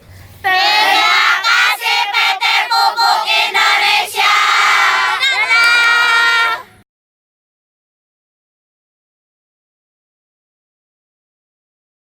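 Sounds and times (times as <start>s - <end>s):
children chanting a cheer: 0.4s - 6.7s.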